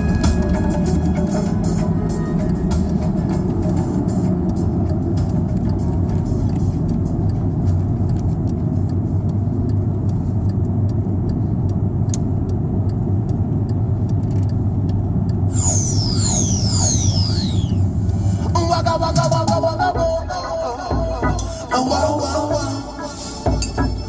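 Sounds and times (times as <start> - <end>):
diesel engine rumble: 0.0 - 24.0
road noise: 0.0 - 24.0
falling whistling tones: 15.5 - 17.9.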